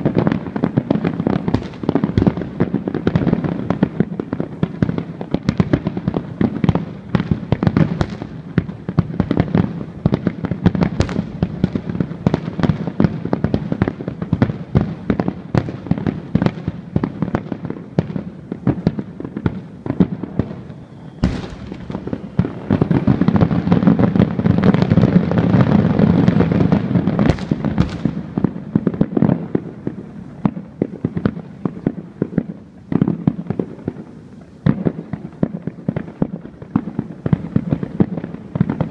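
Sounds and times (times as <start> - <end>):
fireworks bangs and crackles: 0.0 - 38.9
sharp firework boom: 1.5 - 2.4, 20.4 - 23.8, 27.2 - 28.6.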